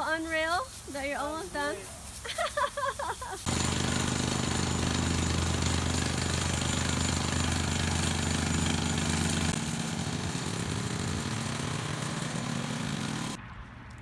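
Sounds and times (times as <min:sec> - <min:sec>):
diesel excavator engine running: 0:03.5 - 0:13.4.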